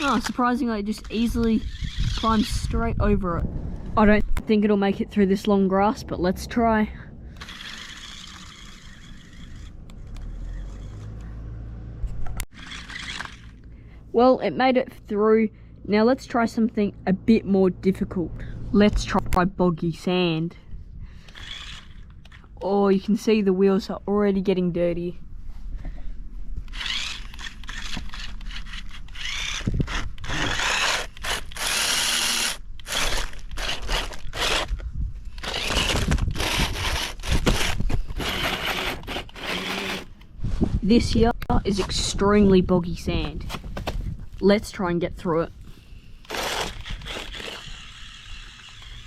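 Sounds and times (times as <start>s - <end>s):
grass scratching against rc car: 0.0s - 3.4s, 7.4s - 11.2s, 12.5s - 13.6s, 21.3s - 22.7s, 26.7s - 43.3s, 46.2s - 49.0s
electric motor and gears whining: 0.0s - 24.5s, 26.5s - 49.0s
low rumble: 1.4s - 23.1s.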